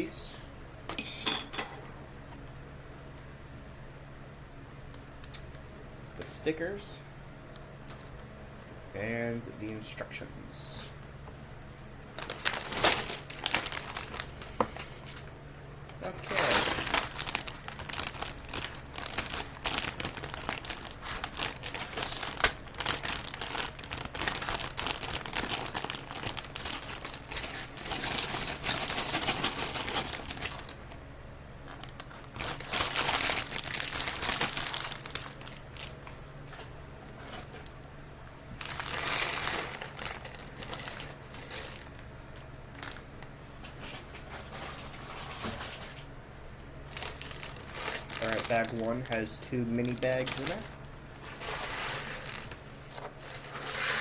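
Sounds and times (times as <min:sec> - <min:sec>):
plastic bags crinkling: 0:12.0 - 0:15.3, 0:15.9 - 0:31.0, 0:31.6 - 0:37.8, 0:38.5 - 0:46.1, 0:46.8 - 0:54.0.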